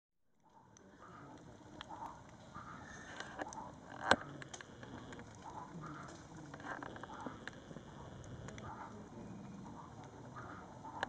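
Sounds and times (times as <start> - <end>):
campfire crackling: 0.3 - 11.0
fire popping: 0.4 - 11.0.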